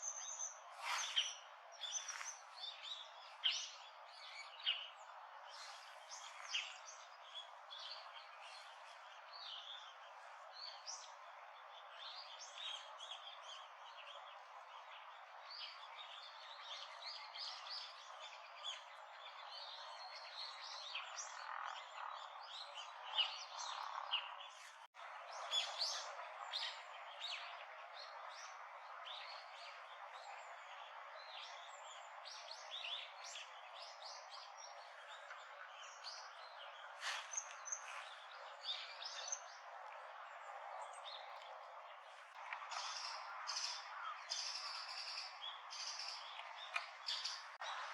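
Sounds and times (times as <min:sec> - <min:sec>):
birds chirping: 0:00.0 - 0:09.9, 0:30.4 - 0:47.9.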